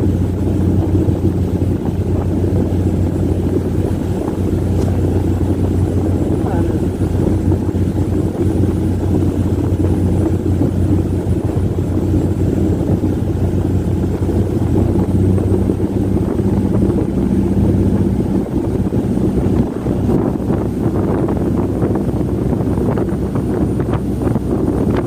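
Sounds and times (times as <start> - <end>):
boat diesel engines droning: 0.0 - 25.0.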